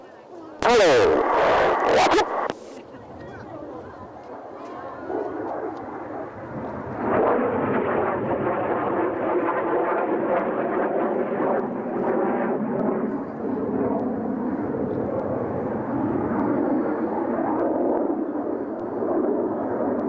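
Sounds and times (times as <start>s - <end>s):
heavy breathing over radio: 0.6s - 2.8s.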